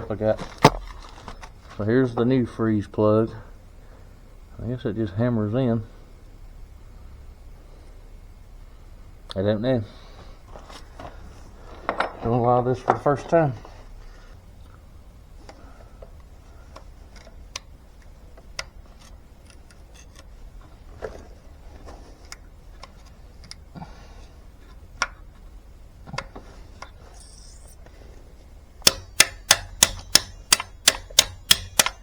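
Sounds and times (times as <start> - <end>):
tools clinking on metal: 26.8 - 27.8, 28.8 - 32.0
sharp hammer blows on metal: 28.8 - 32.0.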